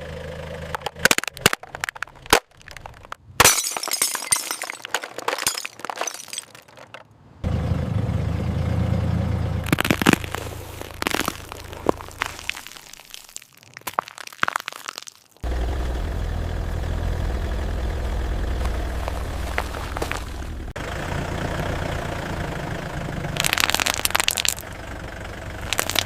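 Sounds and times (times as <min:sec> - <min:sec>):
car engine running low: 0:00.0 - 0:03.1, 0:07.4 - 0:12.2, 0:15.4 - 0:26.0
brittle objects cracking under tyre: 0:00.6 - 0:07.1, 0:09.6 - 0:15.5, 0:18.6 - 0:20.6, 0:23.4 - 0:24.7, 0:25.6 - 0:26.0.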